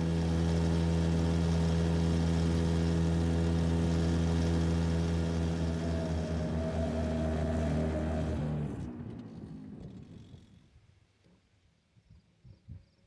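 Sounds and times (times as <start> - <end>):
engine droning hum: 0.0 - 10.7
higher whine: 5.6 - 9.4.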